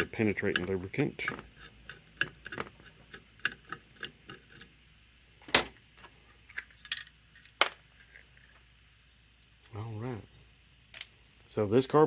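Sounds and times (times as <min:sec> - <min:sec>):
small metal parts clinking: 0:05.4 - 0:05.8, 0:06.5 - 0:08.3, 0:10.9 - 0:11.2.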